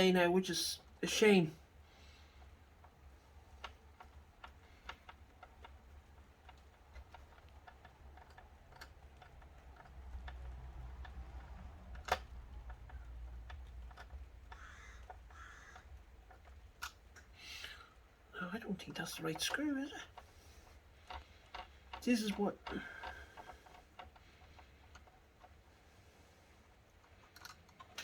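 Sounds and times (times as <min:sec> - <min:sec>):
low steady hum: 0:00.0 - 0:28.0
clicks of small screws and plastic parts: 0:02.4 - 0:18.1, 0:19.0 - 0:25.8, 0:26.9 - 0:28.0.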